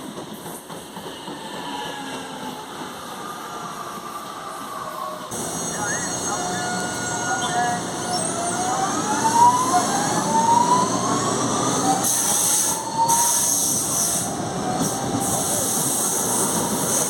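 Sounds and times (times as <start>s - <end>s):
electric train motor whine: 5.3s - 12.1s.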